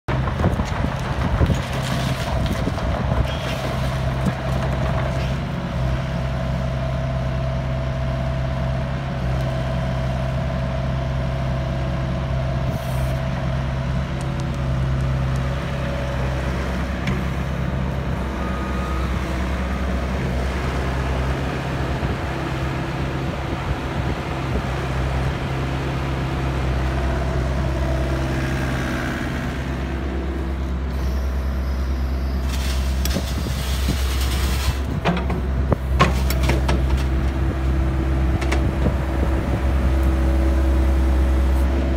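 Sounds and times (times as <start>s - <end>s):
diesel engine running: 0.1s - 41.9s.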